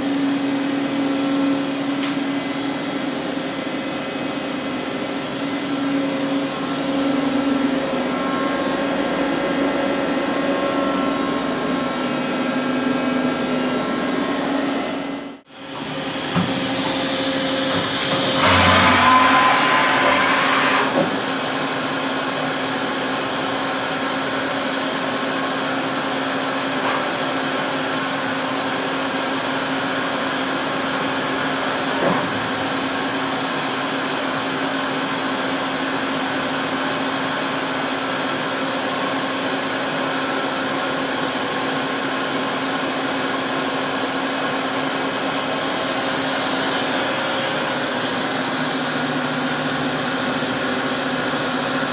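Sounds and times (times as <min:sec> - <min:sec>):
lathe machine hum: 0:00.0 - 0:26.7, 0:32.8 - 0:51.9
machine whirring: 0:15.6 - 0:21.4.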